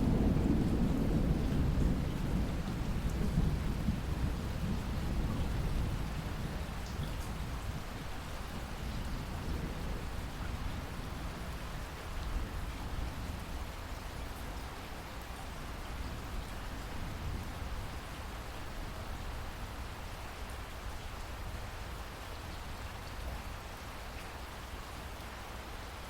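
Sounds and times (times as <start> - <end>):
thunder rumbling: 0.0 - 6.8
heavy rain falling: 0.0 - 26.0.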